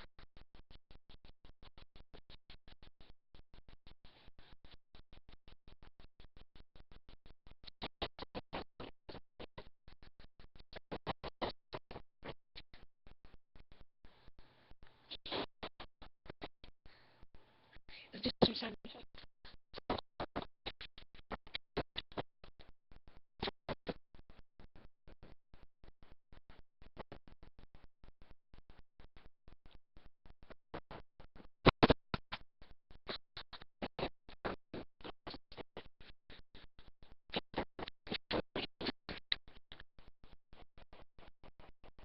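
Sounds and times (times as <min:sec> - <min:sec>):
scratchy noise bursts: 0:10.7 - 0:13.4, 0:15.0 - 0:16.6, 0:17.8 - 0:22.7, 0:30.7 - 0:32.4, 0:33.1 - 0:36.2.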